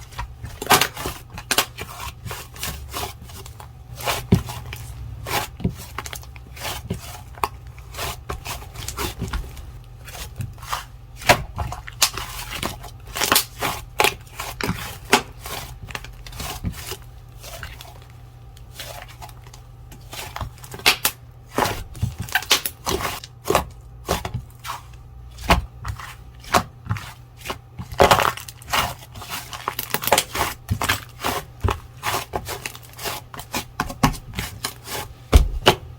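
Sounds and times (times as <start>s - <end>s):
low steady hum: 0.0s - 35.9s
slime crackling and popping: 13.2s - 13.6s.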